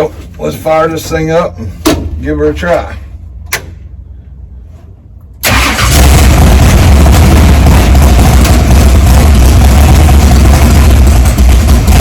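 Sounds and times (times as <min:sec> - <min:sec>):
car engine starting and running: 0:05.2 - 0:12.0.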